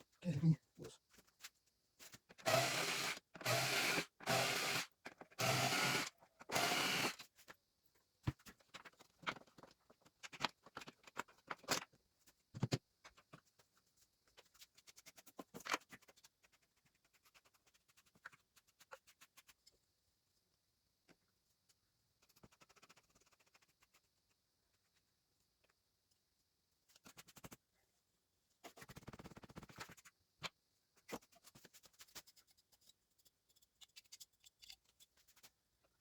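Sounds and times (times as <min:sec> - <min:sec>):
plastic parts and screws clicking: 0:02.2 - 0:07.6, 0:31.0 - 0:36.0
powered screwdriver bursts: 0:02.4 - 0:07.2.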